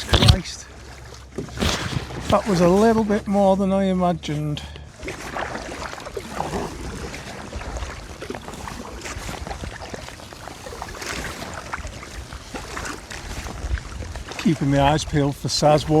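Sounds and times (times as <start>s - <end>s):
small water splashes: 0.0s - 16.0s
water slapping around a kayak: 0.0s - 16.0s
wind buffeting microphone: 6.2s - 16.0s.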